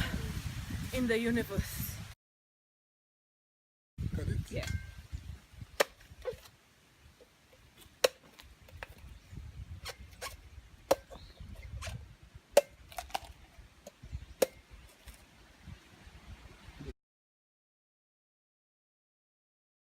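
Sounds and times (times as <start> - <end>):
machete chopping coconut: 5.8 - 6.5, 8.0 - 9.0, 9.8 - 13.3, 14.4 - 14.6.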